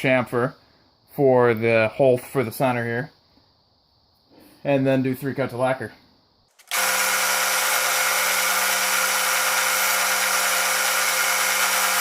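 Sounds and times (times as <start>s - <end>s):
wood lathe running: 6.6s - 12.0s.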